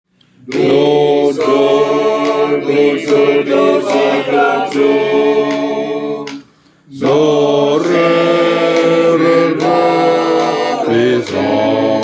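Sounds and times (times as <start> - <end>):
men's choir singing unaccompanied: 0.4 - 12.0.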